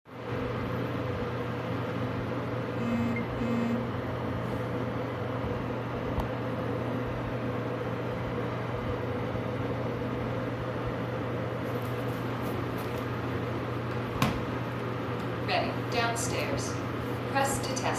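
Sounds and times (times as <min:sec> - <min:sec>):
steady mechanical hum: 0:00.1 - 0:17.9
short buzzy tones: 0:02.8 - 0:04.0.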